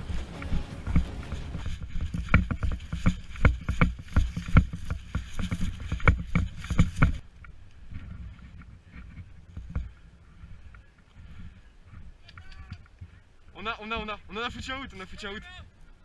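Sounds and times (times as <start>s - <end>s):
running footsteps: 0.0s - 7.2s.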